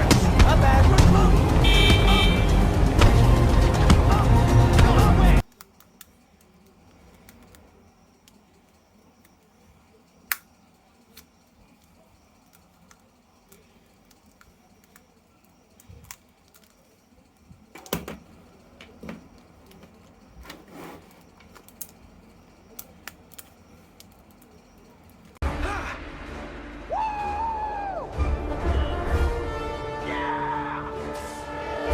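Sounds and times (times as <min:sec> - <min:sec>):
sharp plastic clicks: 0:05.4 - 0:20.6, 0:21.2 - 0:25.4.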